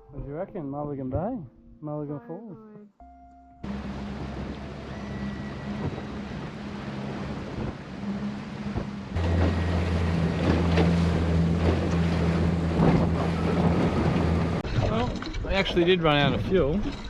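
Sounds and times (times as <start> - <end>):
water slapping against hull: 3.6 - 15.5
outboard motor running: 3.6 - 17.0
wind: 3.6 - 17.0.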